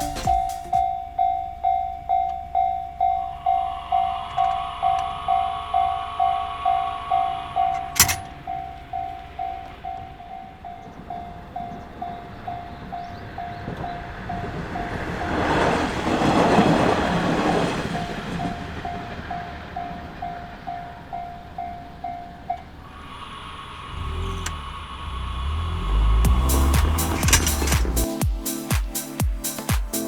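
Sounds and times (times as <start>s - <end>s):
level-crossing warning bell: 0.0s - 23.8s
diesel train passing: 0.0s - 28.2s.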